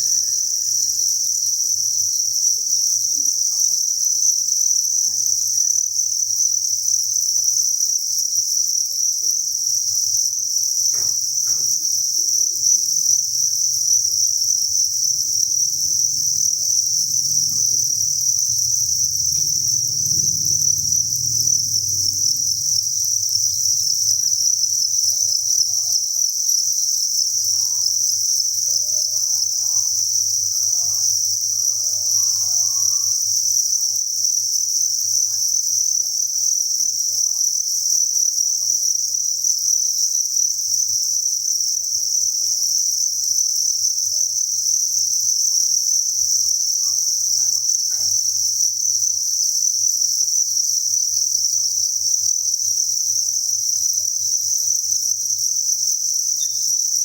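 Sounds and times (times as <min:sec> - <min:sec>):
crickets chirping: 0:00.0 - 0:57.0
faint low hum: 0:12.6 - 0:26.2.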